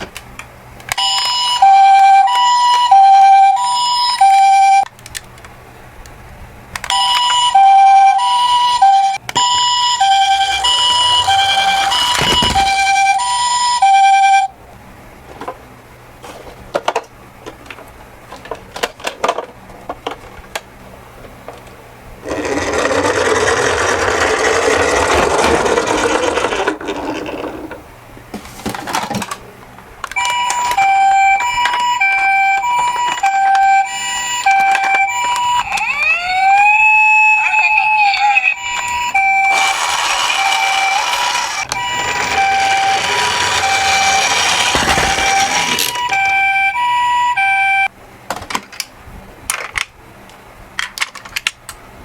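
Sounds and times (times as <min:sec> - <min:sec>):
toy two-tone siren: 0:00.9 - 0:04.9, 0:06.8 - 0:14.5, 0:30.2 - 0:47.9
rising wail siren: 0:01.0 - 0:04.9, 0:06.9 - 0:14.5, 0:30.2 - 0:47.9
toy cars rolling down a slope: 0:22.2 - 0:27.8, 0:39.2 - 0:46.5.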